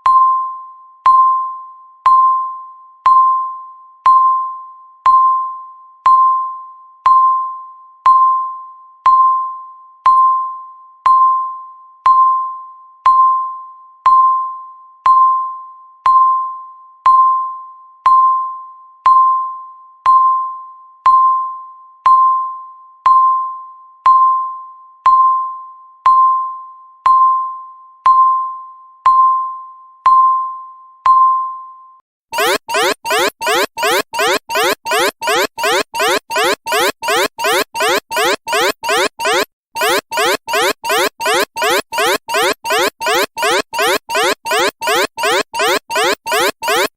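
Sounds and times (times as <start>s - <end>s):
pulsing alarm: 32.4s - 46.9s
timer electronic beeps: 32.4s - 46.9s.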